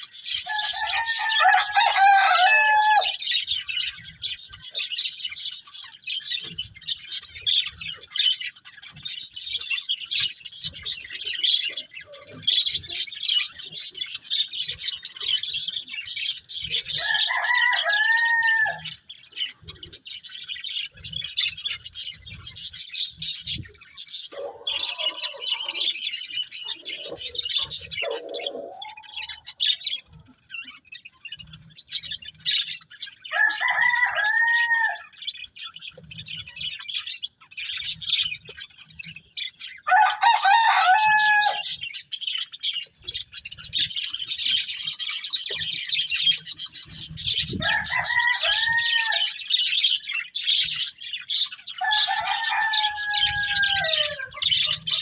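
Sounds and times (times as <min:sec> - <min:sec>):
budgerigars twittering: 0:00.0 - 0:55.0.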